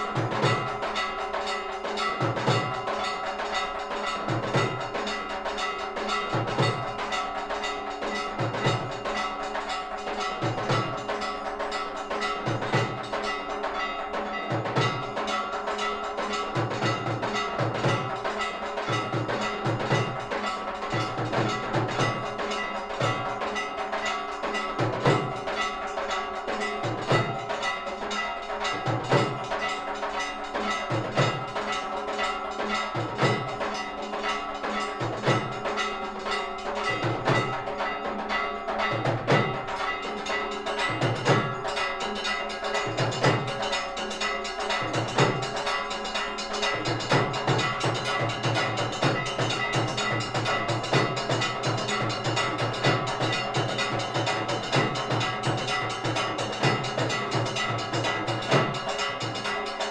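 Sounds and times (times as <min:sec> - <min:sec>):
bells ringing: 0:00.0 - 0:59.9.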